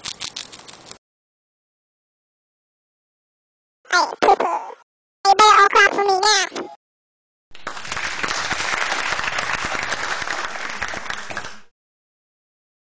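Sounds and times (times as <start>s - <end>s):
crowd applauding: 7.5s - 11.7s.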